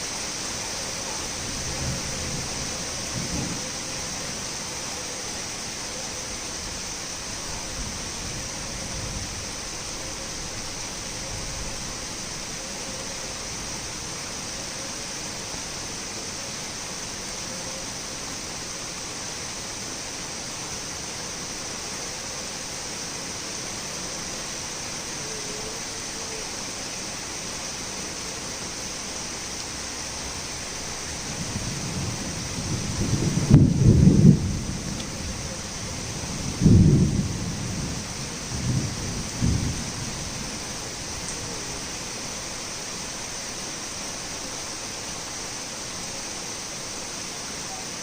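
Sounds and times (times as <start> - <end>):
torrential rain: 0.0 - 48.0
thunder rumbling: 1.4 - 4.2, 30.6 - 41.8.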